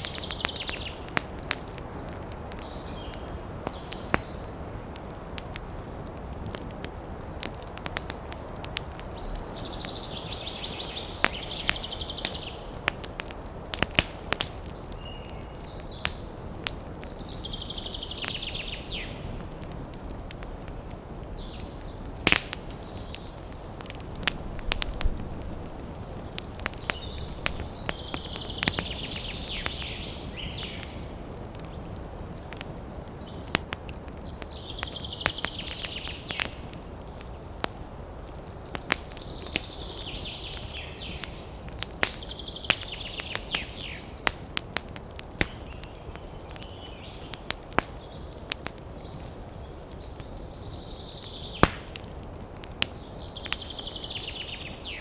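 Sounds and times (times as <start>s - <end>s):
campfire crackling and popping: 0.0s - 55.0s
wind through trees: 0.0s - 55.0s.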